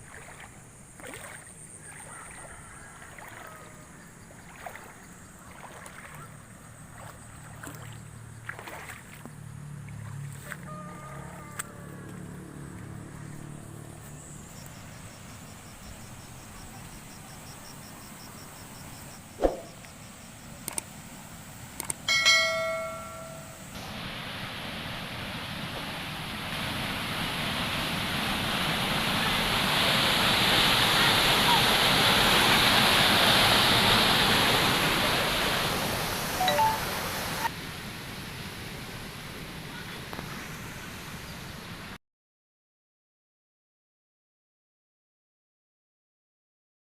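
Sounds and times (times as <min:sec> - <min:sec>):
overflowing water: 0:00.0 - 0:42.0
sharp knock: 0:19.4 - 0:19.8
bell-like metallic ring: 0:22.1 - 0:23.8
heavy rain: 0:25.8 - 0:37.5.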